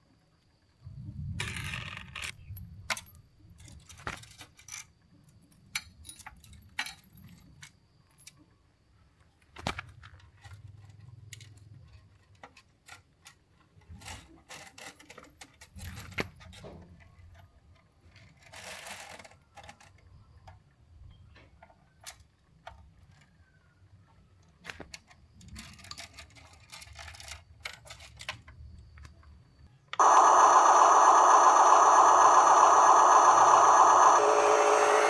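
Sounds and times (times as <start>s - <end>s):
rapid mechanical buzz: 30.0s - 35.0s
short mechanical whirs: 30.0s - 35.0s.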